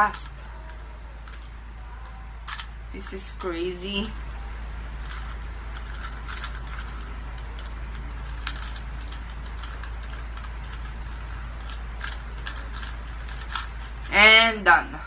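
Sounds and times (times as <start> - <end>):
steady low hum: 0.0 - 15.0
plastic puzzle cube clicking: 2.4 - 2.7, 5.0 - 14.1.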